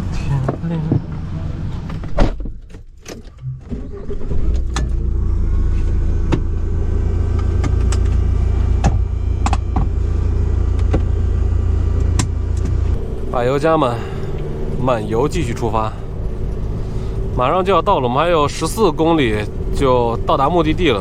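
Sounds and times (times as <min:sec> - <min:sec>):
engine and road rumble: 0:00.0 - 0:21.0.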